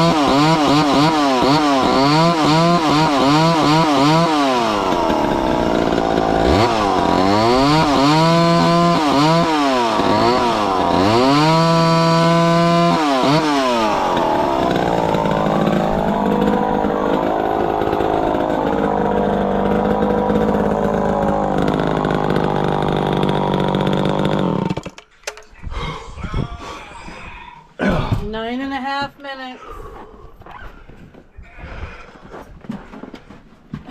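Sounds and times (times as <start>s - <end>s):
chainsaw revving: 0.0s - 25.0s
chainsaw cutting wood: 0.0s - 25.1s.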